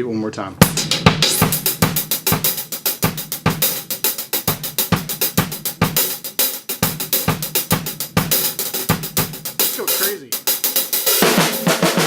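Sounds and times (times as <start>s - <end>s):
kick drum and snare hits: 0.6s - 6.2s, 6.8s - 10.5s
hi-hat and cymbal strokes: 0.6s - 12.0s.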